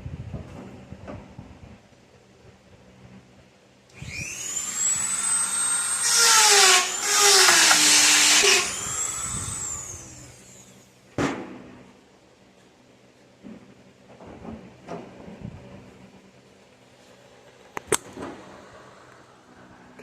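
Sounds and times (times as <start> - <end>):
rotary tool whining: 4.0 - 10.8.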